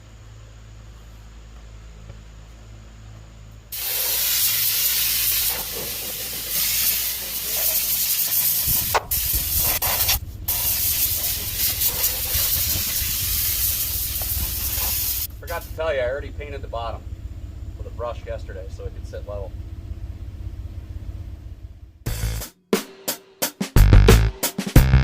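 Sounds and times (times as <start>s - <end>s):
low steady hum: 0.0s - 4.0s, 4.7s - 22.1s
paint spray gun hissing: 3.7s - 15.8s.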